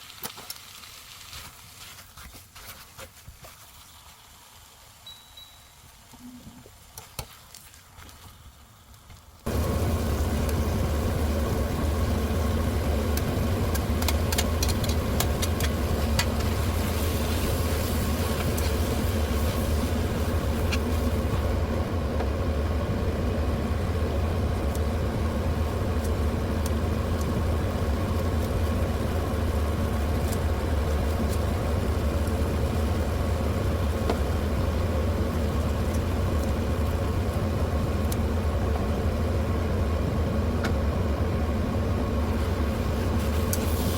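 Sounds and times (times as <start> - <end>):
car engine and road drone: 9.5 - 43.9.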